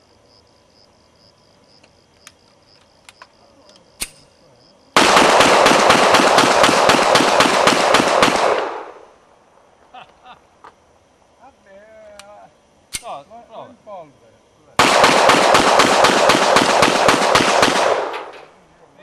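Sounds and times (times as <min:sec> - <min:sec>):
crickets chirping: 0:00.0 - 0:19.0
rapid loud bangs: 0:05.0 - 0:09.0, 0:14.8 - 0:18.5.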